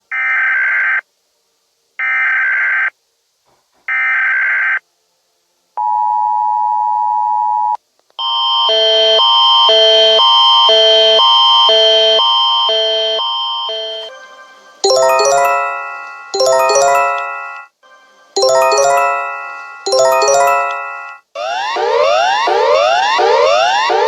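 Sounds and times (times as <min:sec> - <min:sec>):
alternating two-pitch attention tone: 0:14.8 - 0:17.6, 0:18.4 - 0:21.1.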